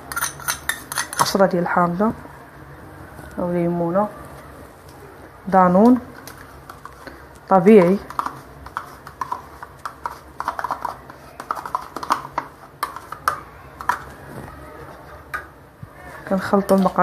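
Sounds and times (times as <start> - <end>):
spoon clinking against bowl: 0.0 - 1.4.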